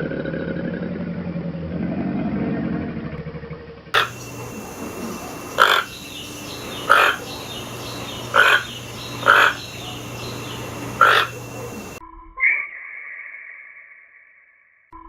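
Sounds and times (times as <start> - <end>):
animal harsh calls: 4.0 - 12.0.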